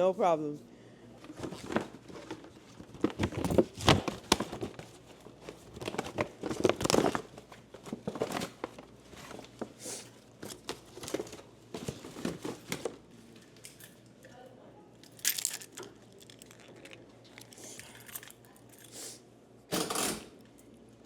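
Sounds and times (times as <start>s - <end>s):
plastic snack bags crinkling: 1.4s - 9.5s, 15.0s - 18.5s.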